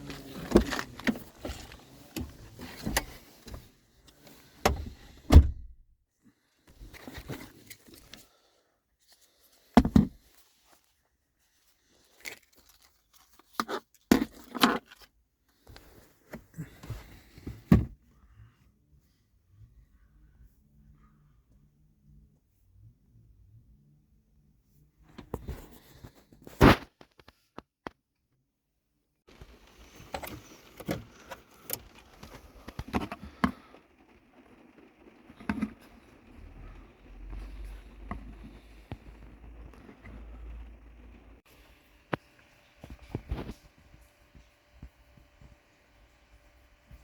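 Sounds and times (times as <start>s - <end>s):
handling knocks clicks and rustles: 0.0s - 5.6s.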